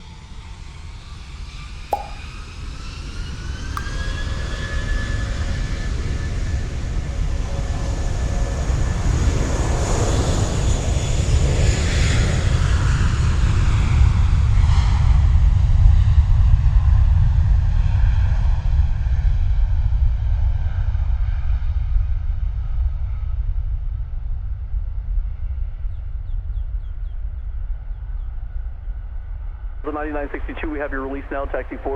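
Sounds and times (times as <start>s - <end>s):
sharp click: 1.9s - 2.4s
jet engines at takeoff: 29.9s - 31.9s.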